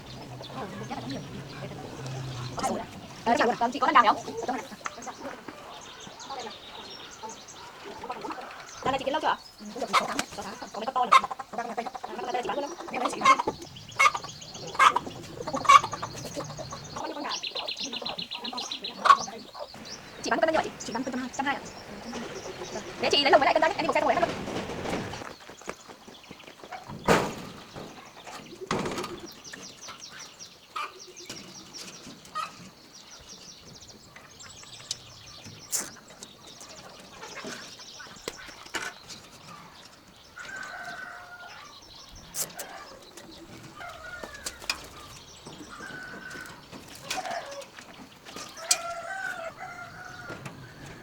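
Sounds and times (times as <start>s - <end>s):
chickens clucking and squawking: 0.0s - 25.4s, 26.5s - 51.0s
wing flapping: 13.2s - 17.1s, 19.8s - 25.7s.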